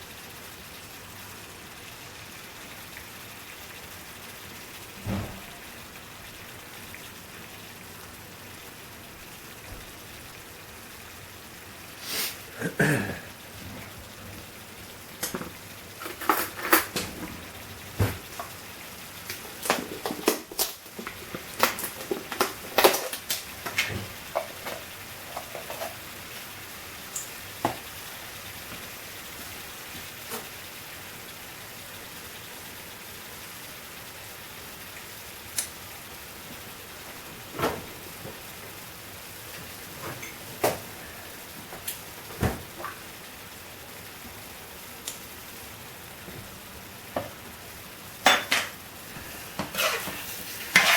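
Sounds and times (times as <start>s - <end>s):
sauce sizzling in a pan: 0.0s - 50.9s
spoon knocking and scraping pan: 19.7s - 26.0s, 48.2s - 48.8s, 49.6s - 50.9s.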